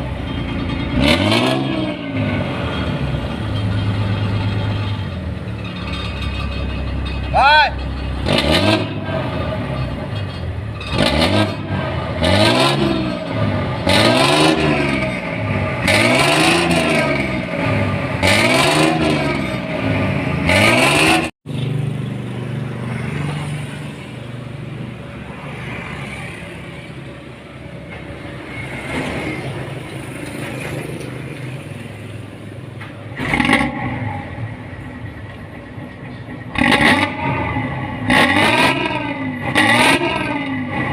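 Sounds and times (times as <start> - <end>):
diesel bus engine revving: 0.0 - 21.9, 31.8 - 40.9.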